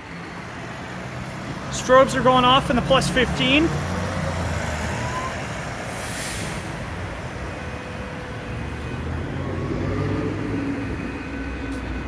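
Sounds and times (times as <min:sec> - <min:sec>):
burst of hiss: 0:05.9 - 0:06.7.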